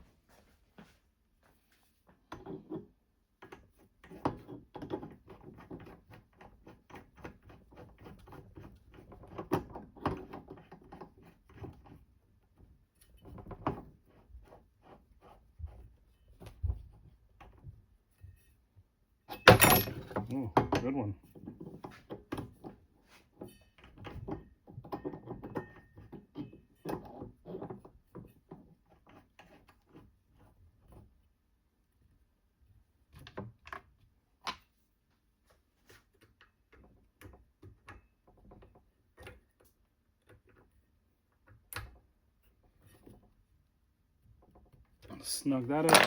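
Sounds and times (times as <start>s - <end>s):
tools and parts clicking and knocking: 19.3s - 22.8s, 23.4s - 30.0s, 44.4s - 46.0s.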